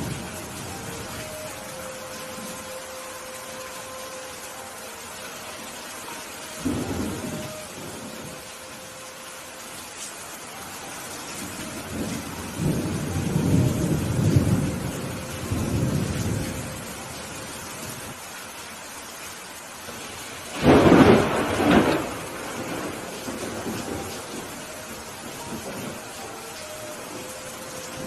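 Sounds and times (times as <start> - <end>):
steady rain: 0.0 - 28.0
rolling thunder rumble: 11.4 - 17.2, 20.5 - 26.2.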